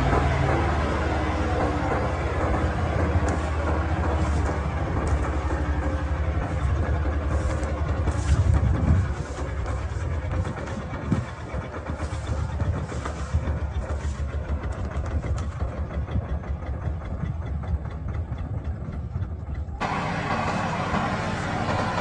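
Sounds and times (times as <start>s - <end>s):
diesel engine pulsing: 0.0s - 22.0s
bright machine noise: 19.8s - 22.0s.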